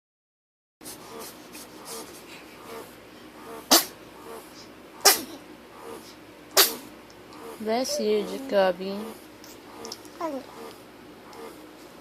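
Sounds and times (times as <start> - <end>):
short sharp sneezes: 3.7 - 4.0, 5.0 - 5.4, 6.6 - 6.9.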